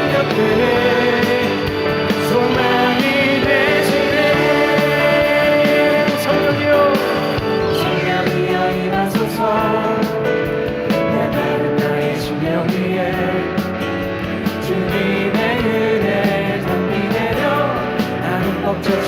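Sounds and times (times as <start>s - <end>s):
faint singing: 0.0s - 10.1s
worship music with guitar and band: 0.0s - 19.0s.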